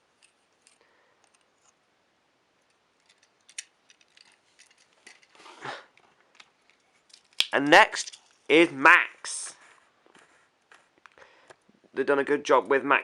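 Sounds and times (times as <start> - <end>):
soft rustle: 2.7 - 7.4, 9.4 - 11.9
toy vehicles clicking and tapping: 3.0 - 8.3.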